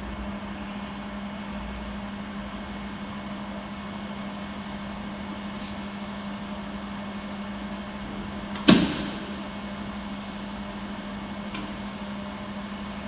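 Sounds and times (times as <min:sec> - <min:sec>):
machine steady hum: 0:00.0 - 0:13.0.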